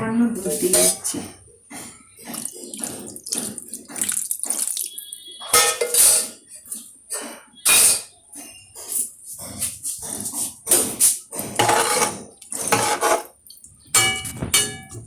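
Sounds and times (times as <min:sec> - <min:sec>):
curry sloshing in a pan: 0:02.1 - 0:06.5, 0:11.4 - 0:15.0.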